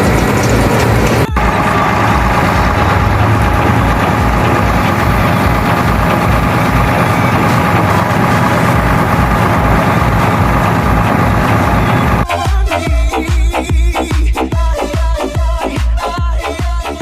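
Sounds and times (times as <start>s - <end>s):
diesel engine rumbling: 0.0s - 12.3s
steady machine whine: 0.0s - 12.3s.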